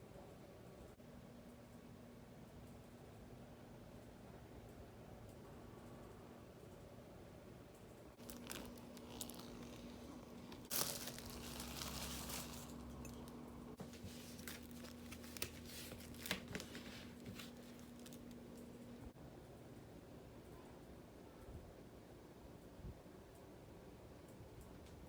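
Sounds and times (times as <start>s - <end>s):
faint steady hum: 0.0s - 25.0s
packaging tearing and crinkling: 8.2s - 18.4s.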